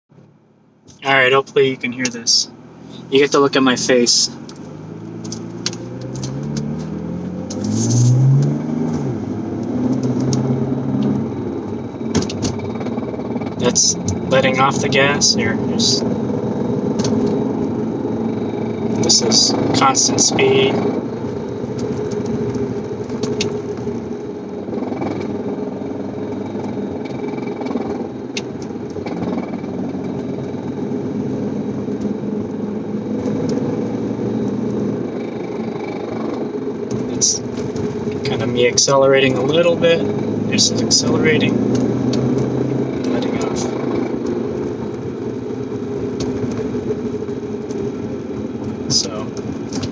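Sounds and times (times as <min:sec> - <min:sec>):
car engine droning while driving: 0:00.1 - 0:49.9
faint irregular clicks: 0:04.4 - 0:07.8, 0:09.6 - 0:14.3, 0:20.8 - 0:30.6
sharp clicks: 0:04.4 - 0:08.6.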